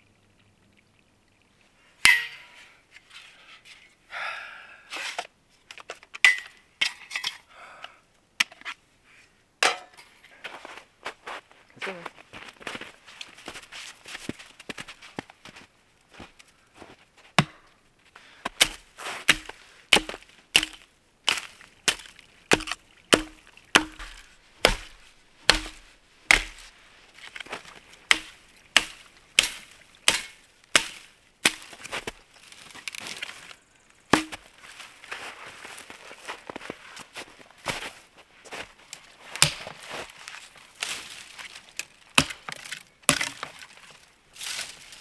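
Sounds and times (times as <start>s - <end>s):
hatchet chopping wood: 17.4s - 17.7s, 18.5s - 26.7s, 28.1s - 31.8s, 34.2s - 34.5s, 39.4s - 39.7s, 42.2s - 42.5s.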